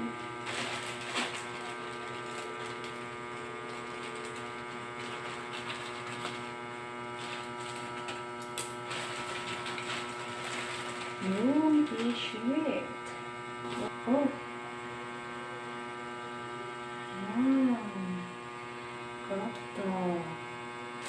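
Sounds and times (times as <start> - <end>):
electrical hum: 0.0 - 21.0
packaging rustling: 0.4 - 6.5, 7.2 - 12.2.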